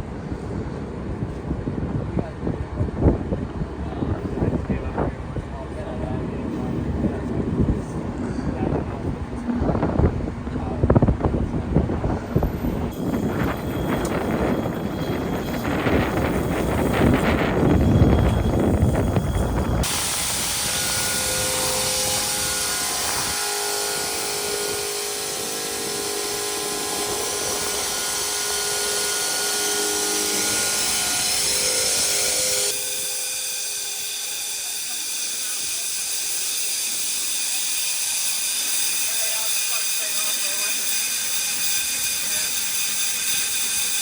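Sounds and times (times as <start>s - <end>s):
wind buffeting microphone: 0.0s - 33.0s
grain vacuum rushing: 11.8s - 44.0s.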